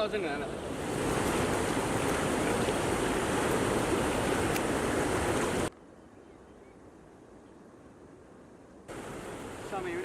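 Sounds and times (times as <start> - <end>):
river water rushing: 0.0 - 5.7, 8.9 - 10.0.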